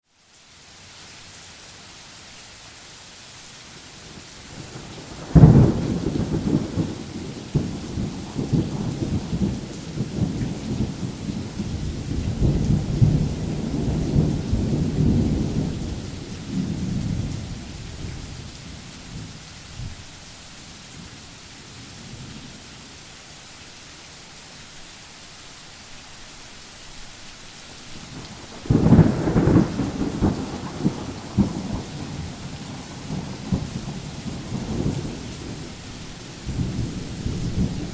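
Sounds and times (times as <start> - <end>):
steady rain falling: 0.0 - 37.9
thunderclap with low rumble: 4.6 - 19.9, 28.0 - 35.7.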